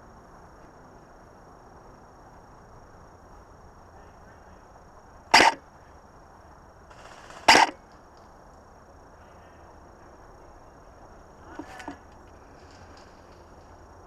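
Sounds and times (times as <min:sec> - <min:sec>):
airsoft rifle shots: 0:05.4 - 0:05.6, 0:07.0 - 0:07.8.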